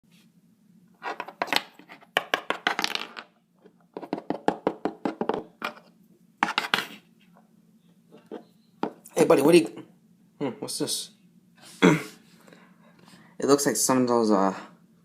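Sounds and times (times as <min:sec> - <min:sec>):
faint steady hum: 0:00.1 - 0:15.0.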